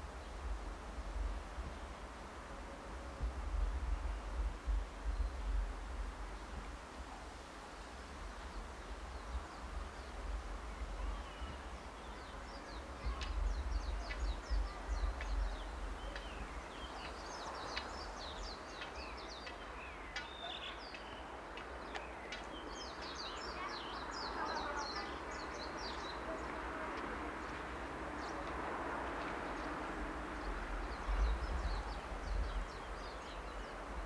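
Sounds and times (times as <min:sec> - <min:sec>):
small birds chirping: 0:09.1 - 0:28.5.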